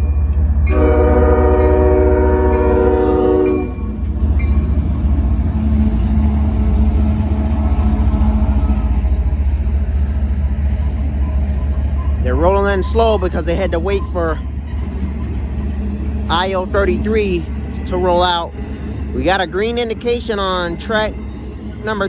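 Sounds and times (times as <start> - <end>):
train rumbling: 0.0 - 22.0
locomotive air horn chord: 0.6 - 3.9.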